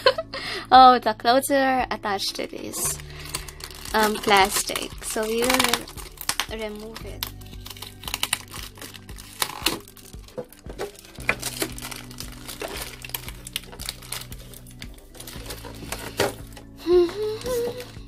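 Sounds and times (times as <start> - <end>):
plastic packaging crinkling: 2.3 - 18.0.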